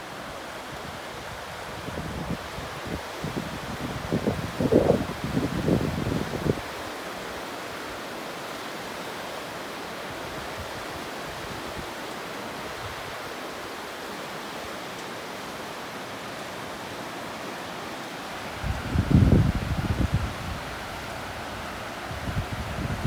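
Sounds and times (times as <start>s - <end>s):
waterfall rushing: 0.0s - 23.0s.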